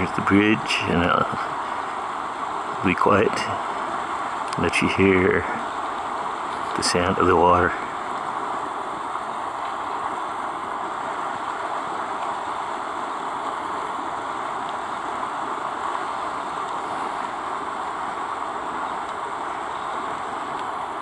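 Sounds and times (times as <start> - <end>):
stream rushing: 0.0 - 21.0.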